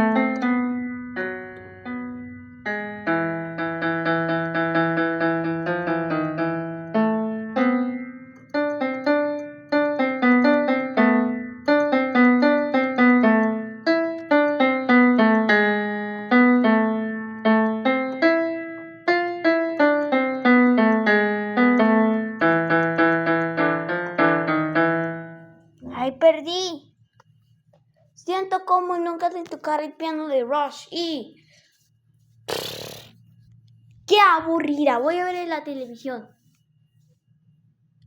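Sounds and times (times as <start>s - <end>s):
piano melody: 0.0s - 25.8s.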